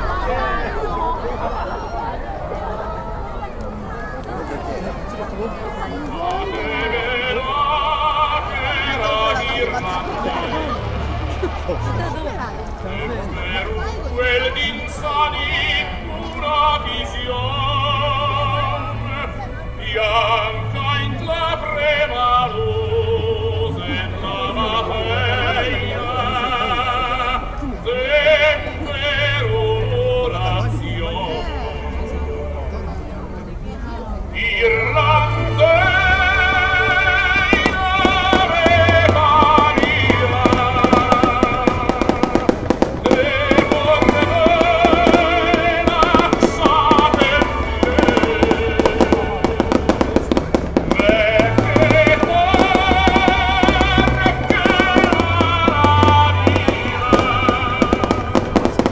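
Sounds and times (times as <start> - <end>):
fireworks crackling: 0.0 - 22.3, 34.3 - 58.9
steady low bass: 5.4 - 58.9
loud music with sung melody: 6.1 - 32.9, 34.2 - 58.9.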